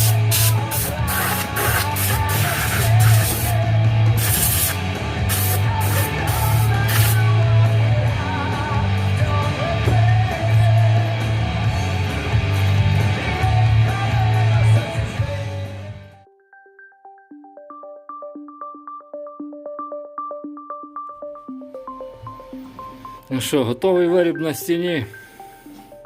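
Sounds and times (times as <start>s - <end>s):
rock music: 0.0s - 16.2s.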